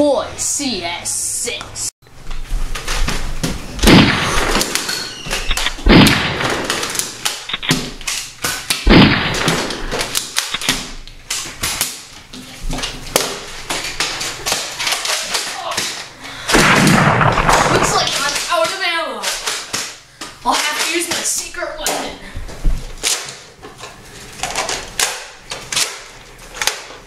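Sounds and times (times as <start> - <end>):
foam dart blaster shots: 3.8 - 8.0, 8.6 - 10.9, 16.5 - 18.5.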